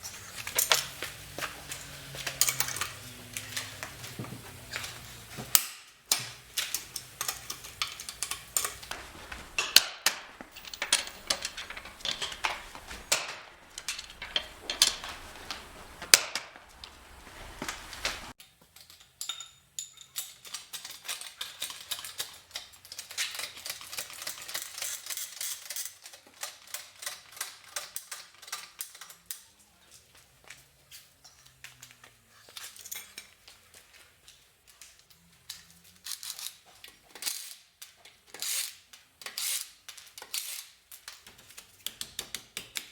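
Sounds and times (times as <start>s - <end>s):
metal tools and bolts clinking: 0.0s - 29.1s, 32.6s - 33.4s.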